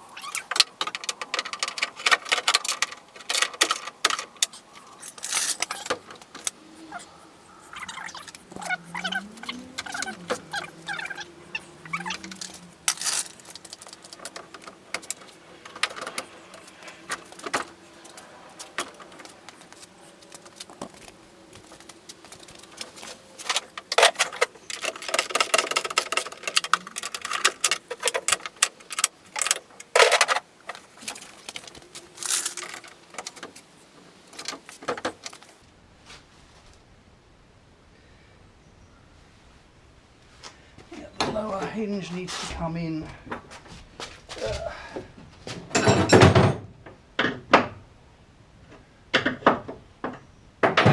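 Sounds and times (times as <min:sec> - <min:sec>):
metal hand tools clinking: 0:00.2 - 0:07.0, 0:07.7 - 0:20.9, 0:22.2 - 0:35.6.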